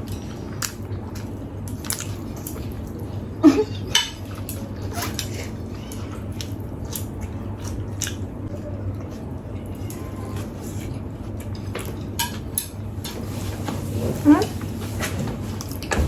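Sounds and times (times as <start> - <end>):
utensils clinking on plates: 3.4 - 5.5, 11.5 - 13.4.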